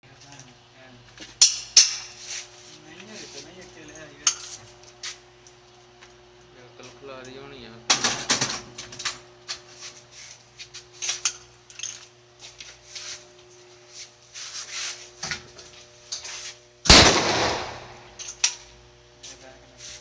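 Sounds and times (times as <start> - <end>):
shotgun blast: 16.9 - 18.2
shotgun handling clicks: 16.9 - 18.6.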